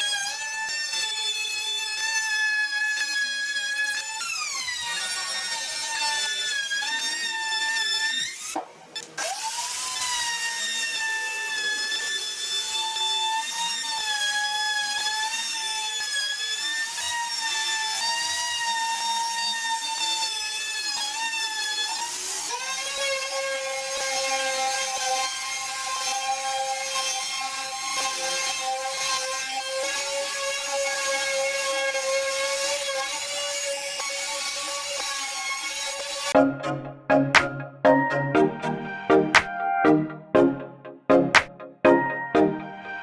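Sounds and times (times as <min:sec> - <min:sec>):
power tool whining on wood: 0:00.2 - 0:25.9.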